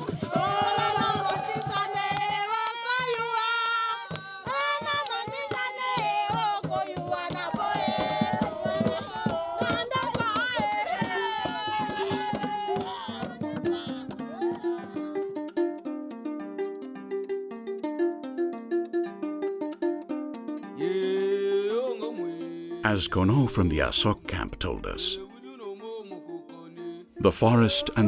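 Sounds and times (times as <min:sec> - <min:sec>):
fast percussion strokes: 0:00.0 - 0:03.4, 0:04.1 - 0:15.0
voices singing with sliding pitches: 0:00.0 - 0:15.1
plucked string instrument: 0:00.0 - 0:28.0.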